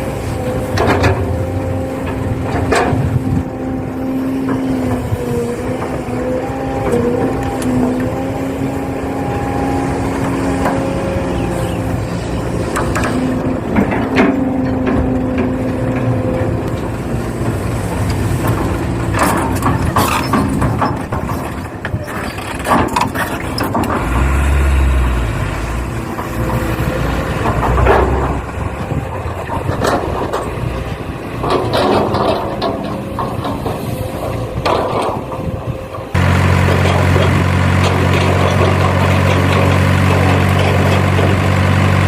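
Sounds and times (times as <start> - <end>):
motor and gear hum: 0.0 - 42.0.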